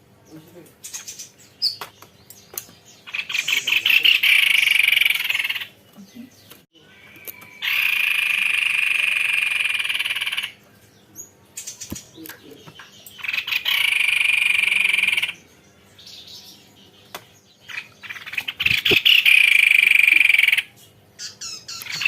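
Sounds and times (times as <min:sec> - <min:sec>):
bird rolling trills: 0:06.8 - 0:10.6, 0:13.2 - 0:15.4, 0:17.7 - 0:22.0.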